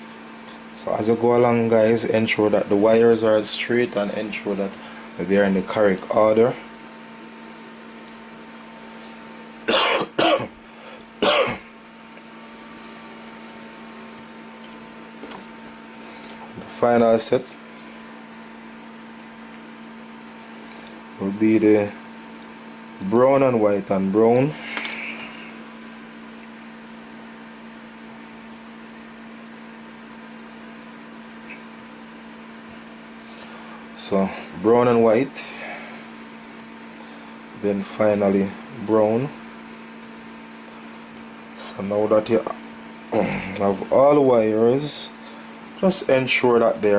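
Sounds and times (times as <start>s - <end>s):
low electrical hum: 0.0s - 46.9s
person coughing: 9.7s - 10.6s, 11.2s - 11.7s, 43.1s - 43.6s.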